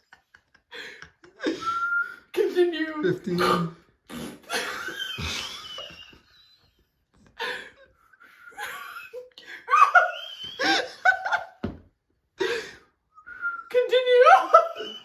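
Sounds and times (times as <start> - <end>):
person whistling: 1.6 - 2.2, 10.2 - 10.8
blowing raspberry: 3.4 - 4.6.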